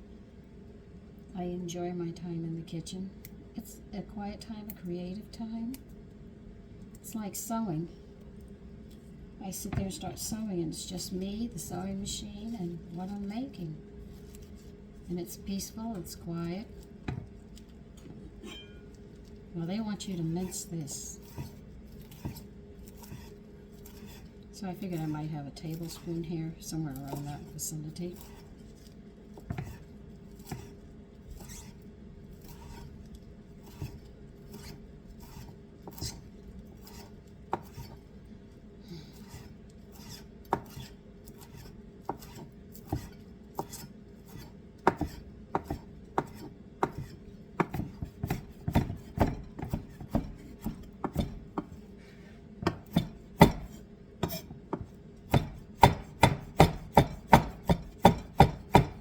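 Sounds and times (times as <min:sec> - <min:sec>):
knife chopping on cutting board: 0:21.2 - 0:24.3, 0:25.8 - 0:26.2, 0:28.1 - 0:31.8, 0:32.4 - 0:32.9, 0:33.6 - 0:38.0, 0:39.1 - 0:51.8, 0:52.6 - 0:59.0.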